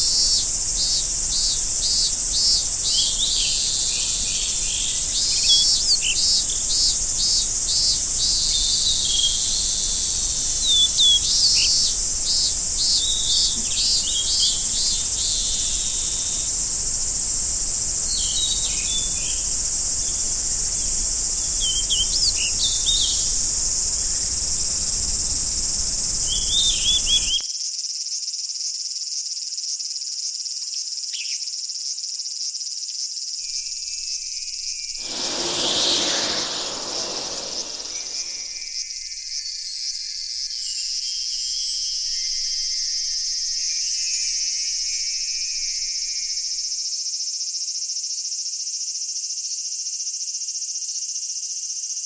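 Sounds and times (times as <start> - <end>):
bird chirps: 0.0 - 9.7, 17.9 - 27.4, 35.0 - 38.5
insects trilling: 0.0 - 27.4, 35.0 - 38.6.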